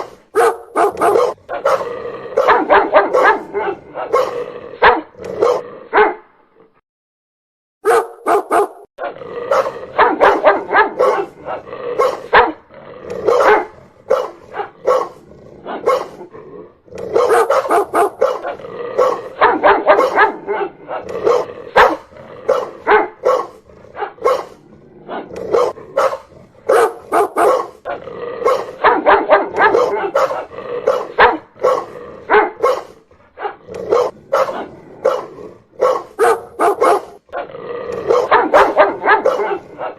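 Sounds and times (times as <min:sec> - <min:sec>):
dog barking rapidly: 0:00.0 - 0:06.2, 0:07.8 - 0:12.6, 0:13.2 - 0:16.3, 0:17.1 - 0:24.6, 0:25.2 - 0:39.9.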